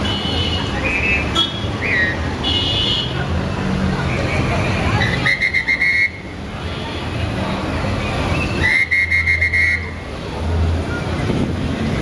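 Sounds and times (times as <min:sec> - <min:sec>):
street traffic: 0:00.0 - 0:12.0
police whistle trilling blasts: 0:08.6 - 0:09.9.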